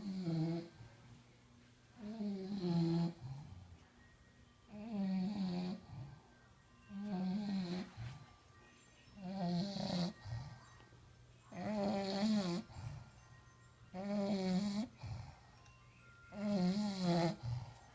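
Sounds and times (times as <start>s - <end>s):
dog snoring: 0.0s - 0.8s, 2.0s - 3.7s, 4.7s - 6.2s, 6.9s - 8.2s, 9.2s - 10.6s, 11.5s - 13.0s, 13.9s - 15.5s, 16.3s - 17.8s.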